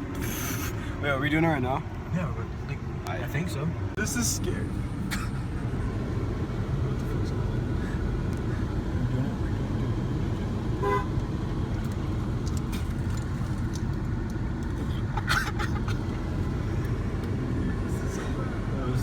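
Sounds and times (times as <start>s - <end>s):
low rumble of car driving: 0.0s - 19.0s
car horn honking: 10.8s - 11.2s.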